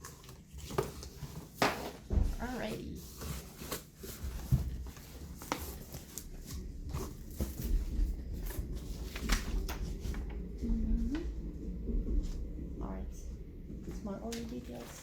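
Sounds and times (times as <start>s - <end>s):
packaging rustling and clicking: 0.0s - 2.0s, 2.7s - 10.0s.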